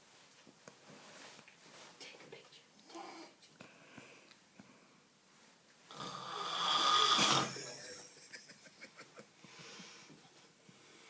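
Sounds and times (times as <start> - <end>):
person snoring loudly: 5.9 - 7.7.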